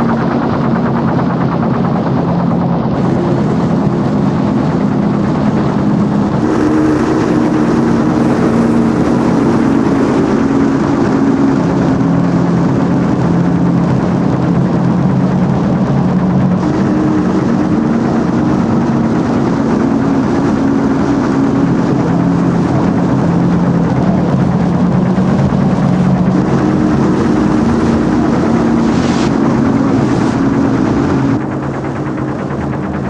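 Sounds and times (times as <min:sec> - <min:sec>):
harsh noise electronic music: 0:21.6 - 0:33.0.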